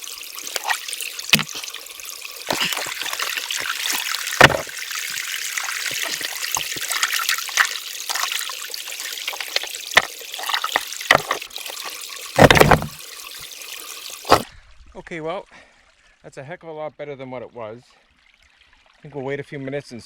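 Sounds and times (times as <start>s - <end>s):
small splashes and knocks: 0.0s - 1.8s, 2.4s - 13.0s, 14.2s - 14.5s
creek water trickling: 0.0s - 14.5s.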